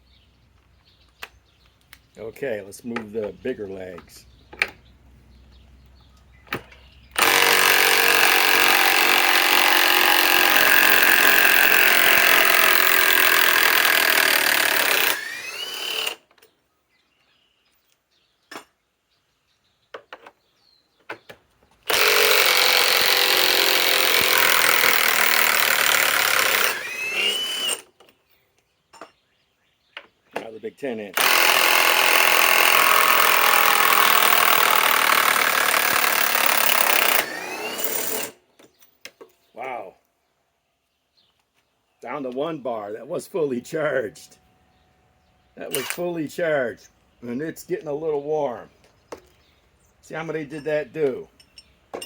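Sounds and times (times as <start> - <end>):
impact wrench hammering screws: 6.5 - 16.2, 21.9 - 27.9, 31.2 - 38.4, 45.7 - 46.0.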